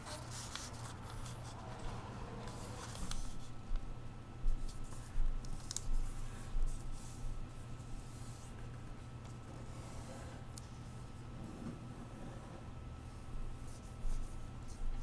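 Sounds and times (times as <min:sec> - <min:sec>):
paper being folded and creased: 0:00.0 - 0:03.5, 0:04.9 - 0:05.9
steady low hum: 0:00.0 - 0:15.0.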